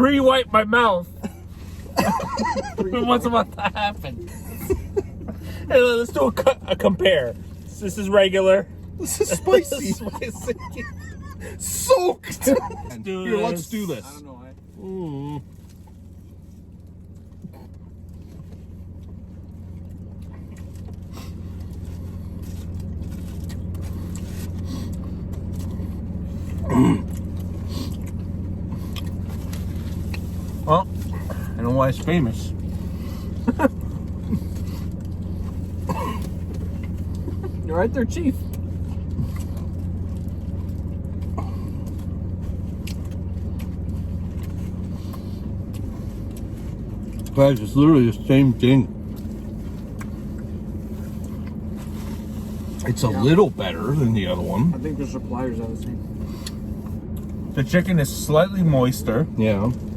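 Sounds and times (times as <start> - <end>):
car engine humming: 0.0 - 59.9
chewing ticks: 38.3 - 47.9, 49.1 - 50.6.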